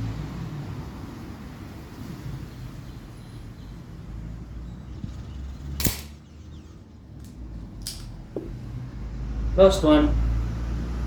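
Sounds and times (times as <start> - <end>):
air pistol shot crack: 5.8 - 6.2.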